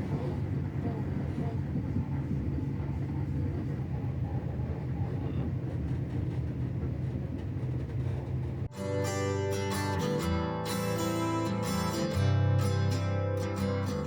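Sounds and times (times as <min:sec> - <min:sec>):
train rumbling on rails: 0:00.0 - 0:10.2
acoustic guitar music: 0:08.7 - 0:14.0.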